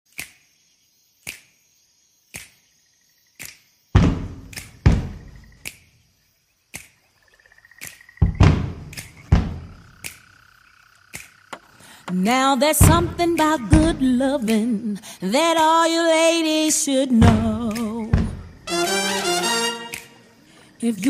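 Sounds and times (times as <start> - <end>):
sharp percussive hits: 4.0 - 5.3
deep bass thumps: 4.0 - 5.5, 8.2 - 10.0, 12.8 - 14.0, 17.2 - 18.6
sharp clicks: 8.8 - 9.3.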